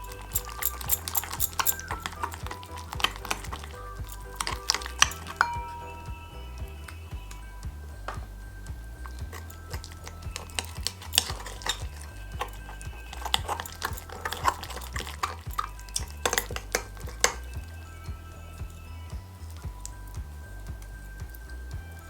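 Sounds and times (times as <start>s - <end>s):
utensil scraping a bowl: 0.0s - 6.0s, 9.3s - 17.5s
background music: 0.0s - 22.0s.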